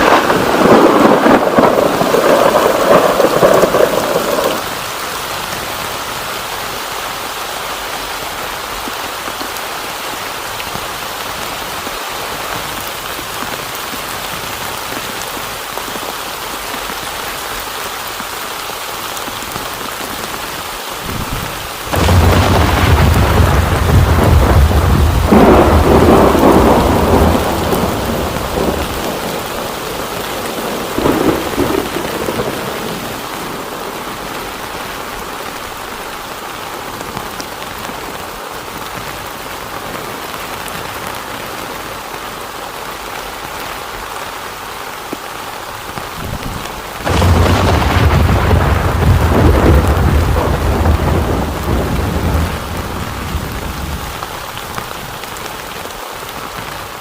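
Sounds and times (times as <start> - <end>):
thunder rumble: 0.0 - 4.8, 21.0 - 34.8, 46.2 - 55.2
heavy rain: 0.0 - 57.0.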